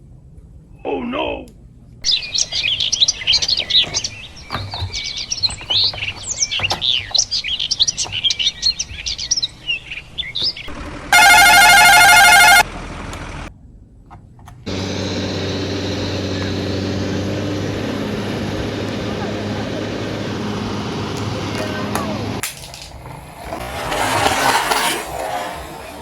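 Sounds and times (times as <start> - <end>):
birds chirping: 0.7 - 12.6, 14.6 - 22.4.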